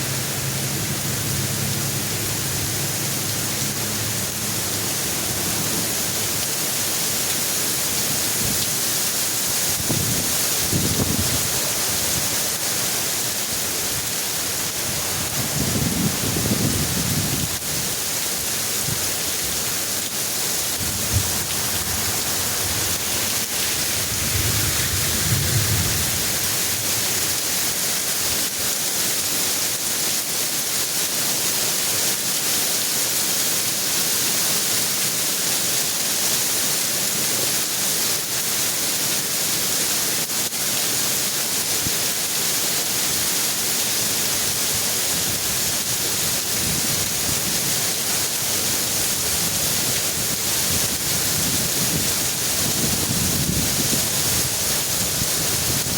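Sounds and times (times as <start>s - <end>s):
heavy rain pouring: 0.0s - 55.9s
low rumbles of thunder: 24.0s - 26.6s.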